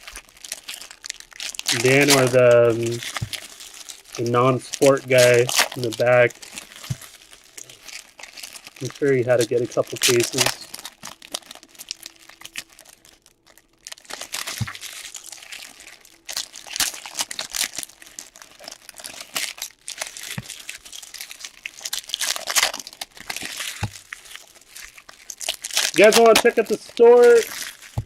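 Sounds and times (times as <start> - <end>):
foil wrappers tearing: 0.0 - 28.0
cards shuffling: 1.7 - 3.4, 4.2 - 6.3, 25.9 - 28.0.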